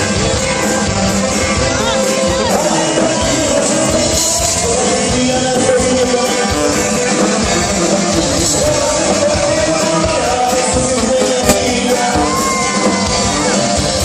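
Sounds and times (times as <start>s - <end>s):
rock music with singing: 0.0s - 14.0s.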